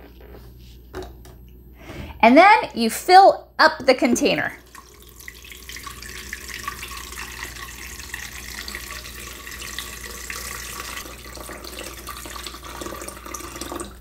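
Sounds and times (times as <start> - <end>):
tap water filling a tank: 4.6 - 14.0.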